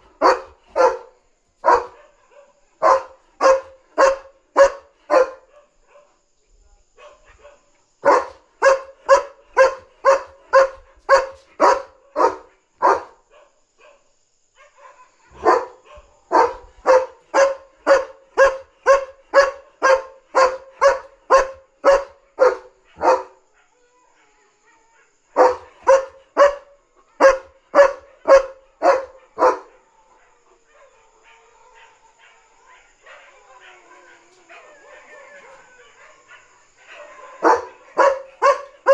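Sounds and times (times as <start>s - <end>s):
dog barking loudly: 0.0s - 2.2s, 2.8s - 5.5s, 8.0s - 13.2s, 15.3s - 23.4s, 25.4s - 29.8s, 37.4s - 38.9s.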